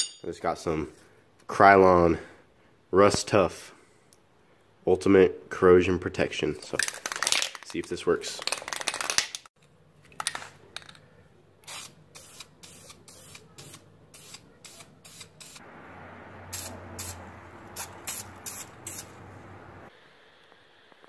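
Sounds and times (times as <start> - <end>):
aerosol spray can hissing: 11.6 - 15.6, 16.5 - 19.2.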